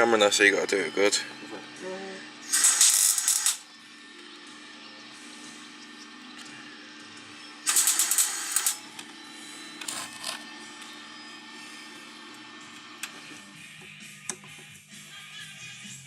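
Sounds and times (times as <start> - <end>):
welder crackling: 2.4 - 3.7, 7.6 - 8.8.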